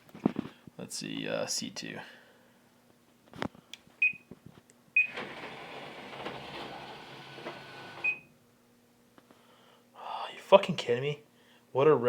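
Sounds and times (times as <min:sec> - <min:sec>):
vending machine beeps: 0:05.0 - 0:08.3
dispensing motor whirring: 0:05.1 - 0:08.2.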